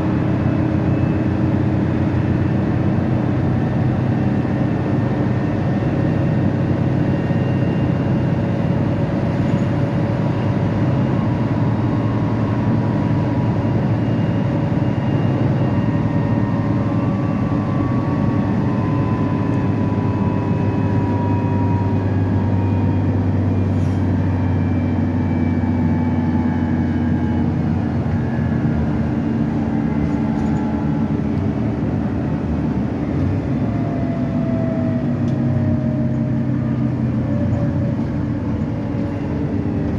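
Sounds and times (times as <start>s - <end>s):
bus diesel engine running: 0.0s - 39.9s.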